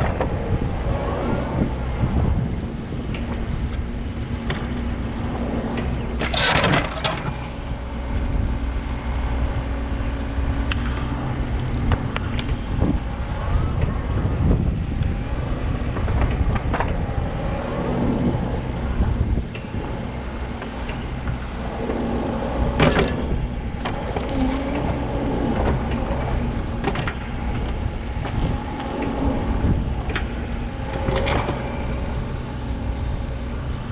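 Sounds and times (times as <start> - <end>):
diesel engine running: 0.0 - 33.9.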